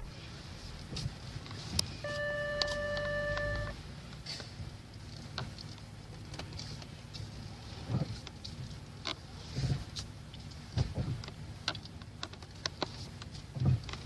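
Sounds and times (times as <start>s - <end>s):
parking sensor warning tone: 1.8s - 3.8s.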